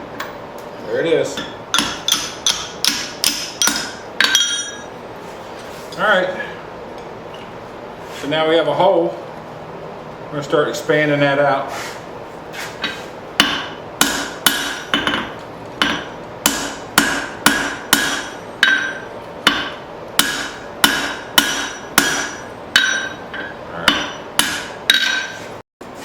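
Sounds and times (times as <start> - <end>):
hammer striking steel on anvil: 1.4 - 4.9, 13.4 - 25.5.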